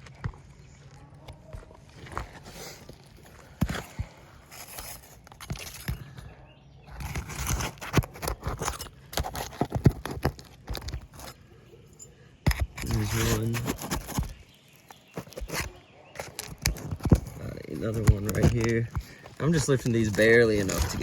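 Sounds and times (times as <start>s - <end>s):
tool prying nails from shingles: 7.0s - 11.4s, 12.4s - 21.0s.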